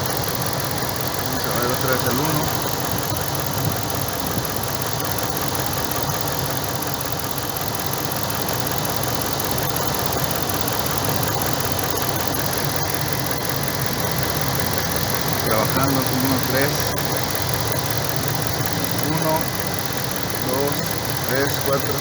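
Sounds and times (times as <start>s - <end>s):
truck engine idling: 0.0s - 22.0s.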